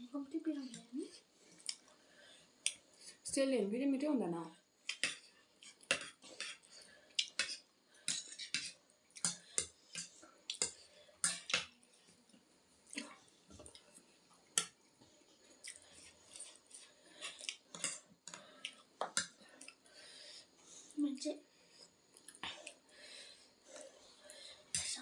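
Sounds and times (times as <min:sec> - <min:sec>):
noodle slurping and chewing: 0:15.4 - 0:19.9.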